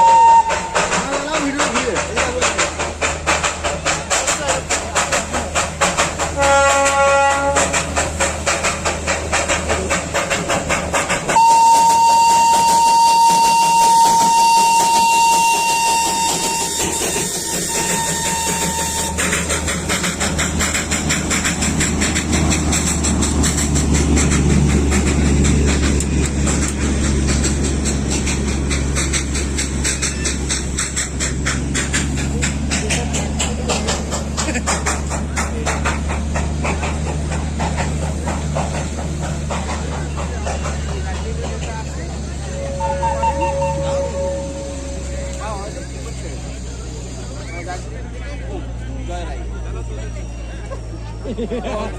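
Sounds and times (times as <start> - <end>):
train whistle: 0.0 - 1.0, 6.4 - 7.9, 11.3 - 19.6, 42.3 - 45.7
toy train rumbling: 0.0 - 48.8
steam locomotive chuffing: 0.0 - 51.9.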